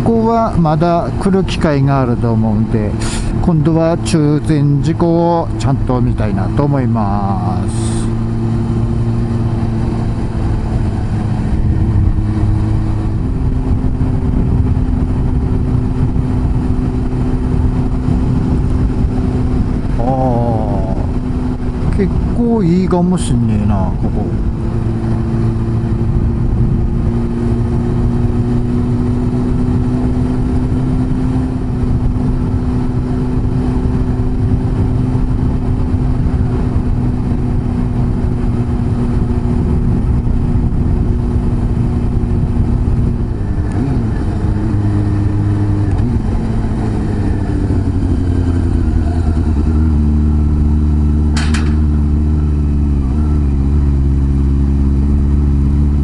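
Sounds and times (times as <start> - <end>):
motorcycle engine cruising: 0.0 - 56.0.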